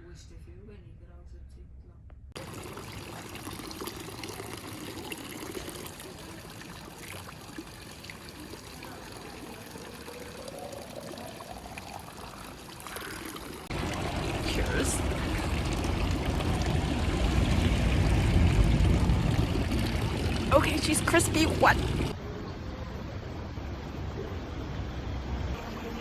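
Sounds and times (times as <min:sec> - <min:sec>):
water filling a vessel: 0:02.4 - 0:22.2.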